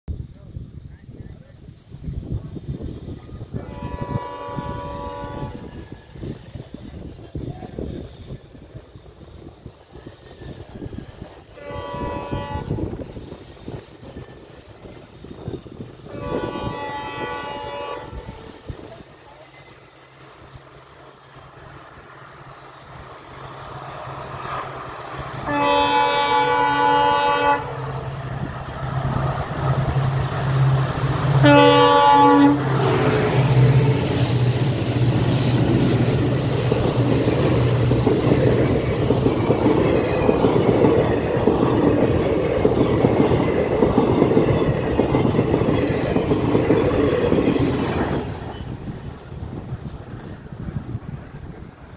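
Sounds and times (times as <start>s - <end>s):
train rolling past: 0.2s - 51.9s
diesel locomotives humming: 2.3s - 51.9s
multi-tone train horn: 3.5s - 6.0s, 11.5s - 13.1s, 16.0s - 19.0s, 25.4s - 28.0s, 31.3s - 34.0s.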